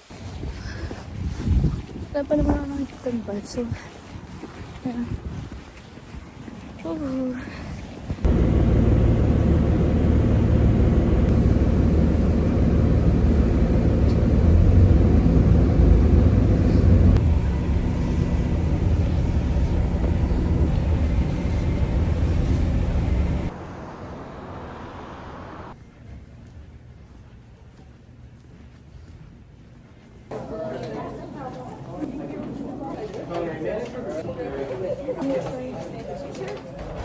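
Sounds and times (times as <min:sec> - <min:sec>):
vehicle rumbling: 0:08.2 - 0:25.8.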